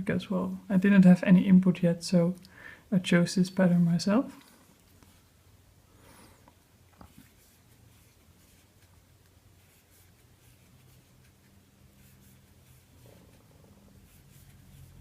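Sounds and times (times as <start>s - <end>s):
faint low hum: 0.0s - 15.0s
yarn rustling on crochet hook: 6.8s - 15.0s.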